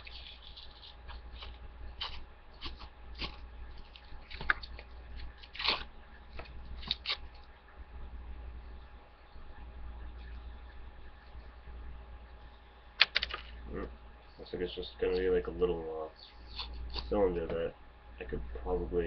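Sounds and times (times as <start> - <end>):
cardboard crinkling and tearing: 0.0 - 7.4.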